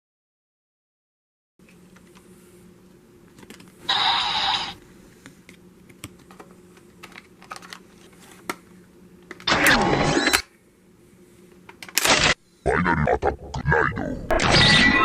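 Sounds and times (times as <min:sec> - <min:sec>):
electronic sound effects: 0:12.2 - 0:15.0.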